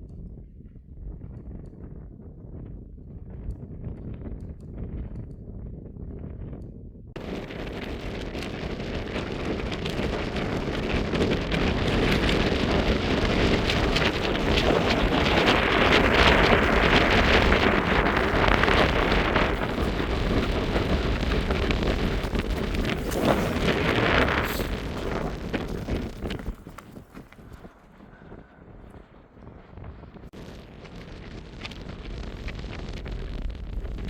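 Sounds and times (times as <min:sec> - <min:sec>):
blizzard wind gusting against tent: 0:00.0 - 0:34.0
snow pattering on fabric: 0:07.2 - 0:27.5.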